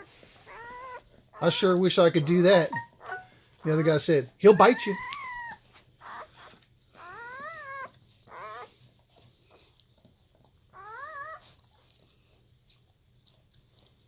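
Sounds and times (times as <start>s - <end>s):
puppy whining: 0.0s - 3.9s, 4.5s - 14.0s.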